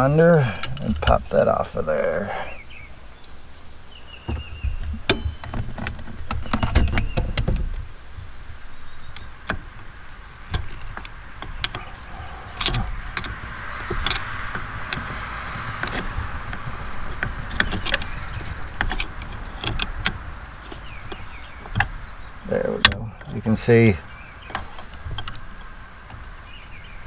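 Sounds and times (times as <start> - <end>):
handling rumble: 0.0 - 27.0.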